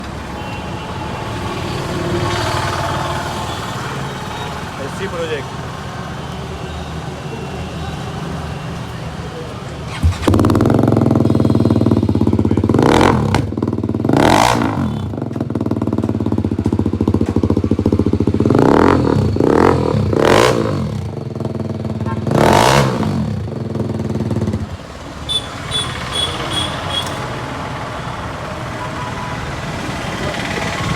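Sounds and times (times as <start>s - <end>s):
motorcycle engine revving: 9.8s - 28.5s.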